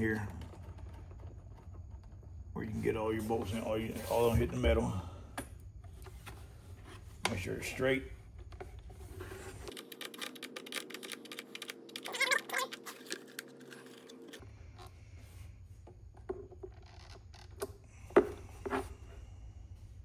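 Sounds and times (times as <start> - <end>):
small metallic clicks: 9.7 - 14.4.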